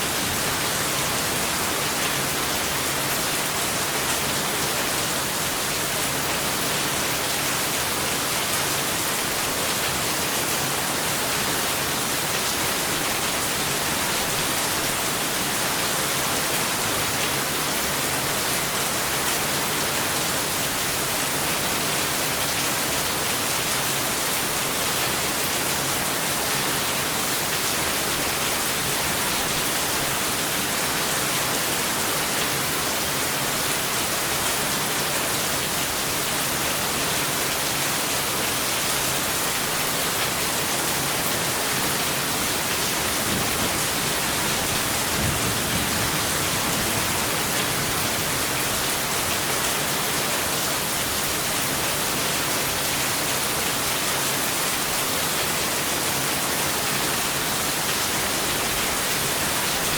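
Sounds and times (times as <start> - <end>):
heavy rain hissing: 40.9 - 52.1.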